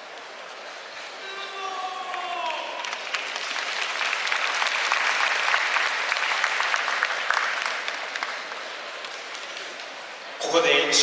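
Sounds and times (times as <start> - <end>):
audience applauding: 1.8 - 10.3.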